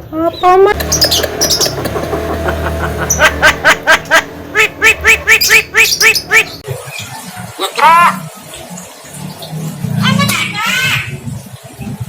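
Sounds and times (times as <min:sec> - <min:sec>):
bird chattering laugh-like notes: 0:00.3 - 0:06.6.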